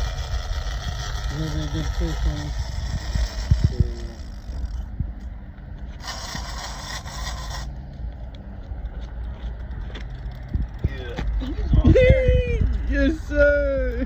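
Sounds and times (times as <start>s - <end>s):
fishing reel drag rasping: 0.0s - 4.9s, 5.9s - 7.8s
steady low rumble: 0.0s - 14.0s.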